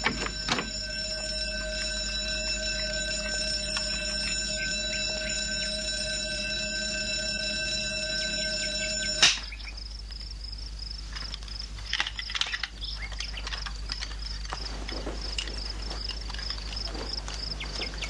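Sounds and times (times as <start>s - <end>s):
crickets chirping: 0.0s - 18.0s.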